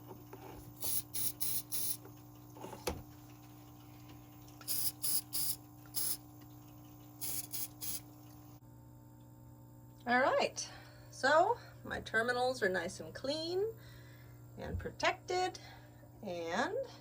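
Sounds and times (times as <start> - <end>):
faint steady hum: 0.0 - 17.0
aerosol spray hisses: 0.8 - 2.0, 4.7 - 6.2, 7.2 - 8.0.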